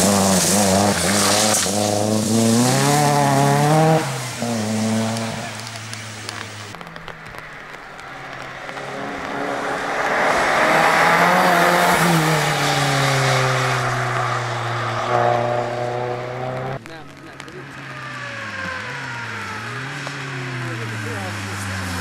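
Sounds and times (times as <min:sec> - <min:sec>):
rally car engine at high revs: 0:00.0 - 0:22.0.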